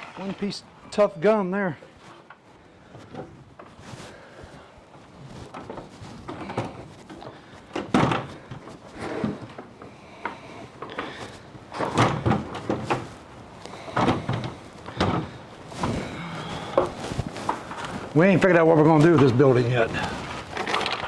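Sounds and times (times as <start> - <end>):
wooden boards knocking: 13.7 - 17.9.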